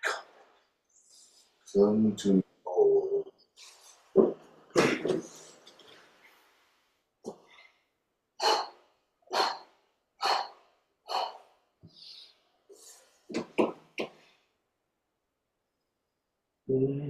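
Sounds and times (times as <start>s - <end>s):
person coughing: 4.7s - 5.6s.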